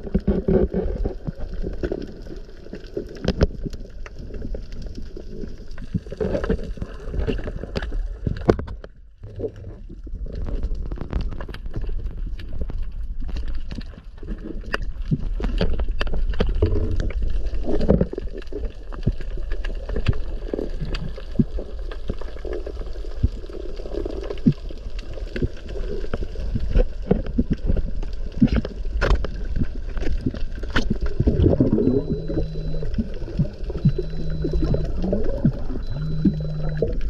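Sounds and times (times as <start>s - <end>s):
underwater clicks and crackles: 0.0s - 37.0s
underwater low rumble: 0.0s - 37.0s
short low hums: 31.3s - 37.0s.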